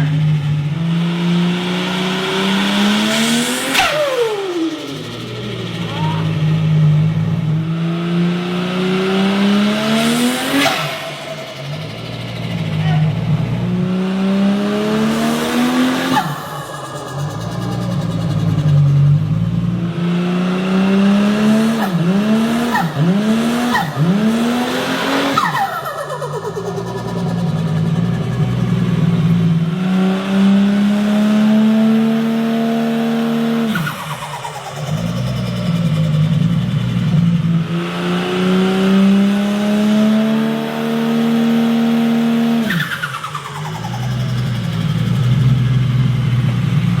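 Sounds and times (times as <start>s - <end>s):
turbocharged car engine revving: 0.0s - 47.0s
turbo flutter chirps: 15.0s - 20.0s, 21.7s - 29.8s, 33.7s - 36.6s, 42.7s - 45.8s.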